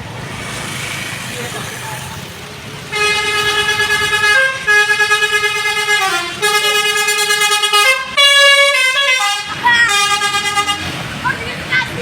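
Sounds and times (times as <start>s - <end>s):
musical bus horn playing tune: 2.9s - 11.0s.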